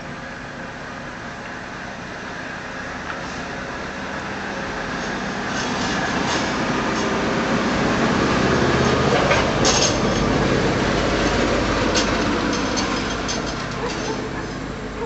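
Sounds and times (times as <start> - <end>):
loud vehicle rumble: 0.0 - 15.0.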